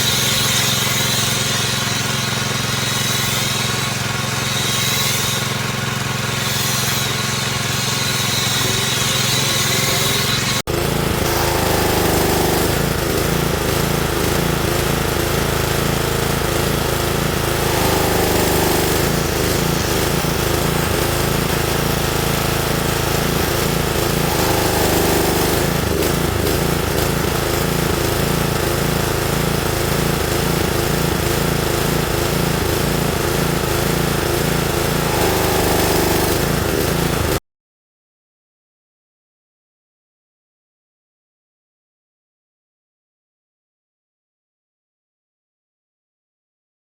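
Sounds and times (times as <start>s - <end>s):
pressure washer running: 0.0s - 37.4s
water spray: 11.2s - 29.0s.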